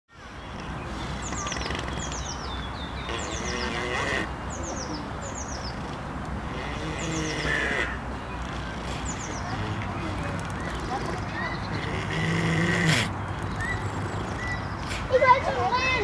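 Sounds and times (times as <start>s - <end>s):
bird singing: 0.2s - 6.0s, 6.6s - 14.9s
pig snoring: 1.2s - 2.3s, 3.0s - 4.3s, 5.7s - 15.0s.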